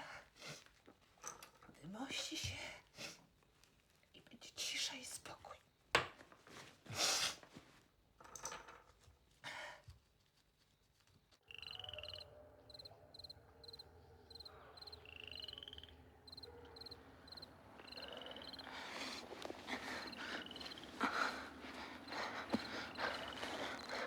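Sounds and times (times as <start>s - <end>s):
rising trilled frog call: 11.5s - 12.2s, 14.8s - 18.7s
frogs chirping: 11.5s - 24.0s
faint rustling: 16.9s - 24.0s.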